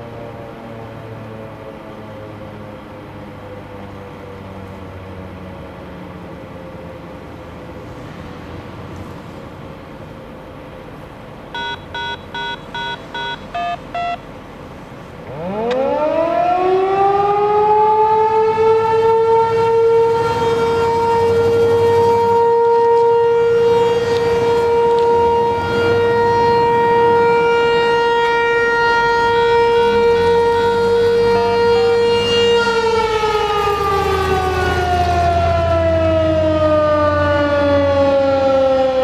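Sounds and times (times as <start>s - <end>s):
outdoor warning siren winding up: 11.6s - 14.2s, 15.3s - 39.0s
electronic beeps: 11.6s - 14.3s.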